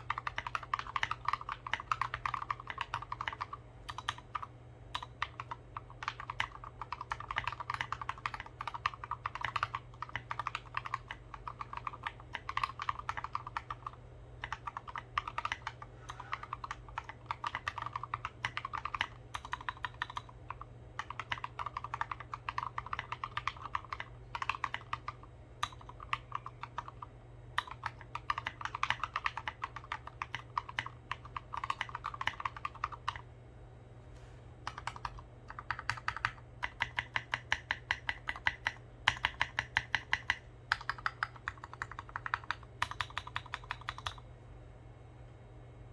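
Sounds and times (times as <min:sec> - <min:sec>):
mechanical keyboard key clicks: 0:34.7 - 0:44.2.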